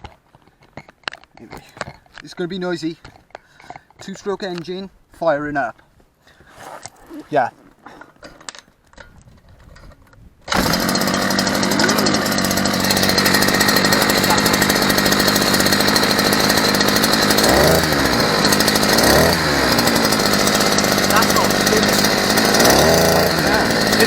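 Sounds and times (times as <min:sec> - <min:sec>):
two-stroke outboard motor running: 0:10.5 - 0:24.0.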